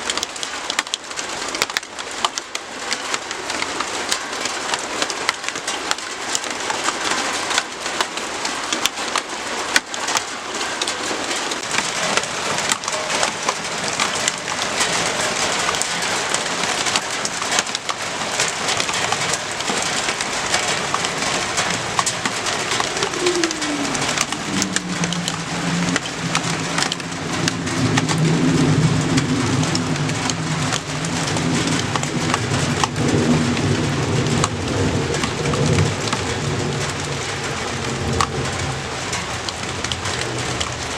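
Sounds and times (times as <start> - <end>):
rain drops pattering: 0.0 - 40.9
low droning tone: 23.5 - 26.3.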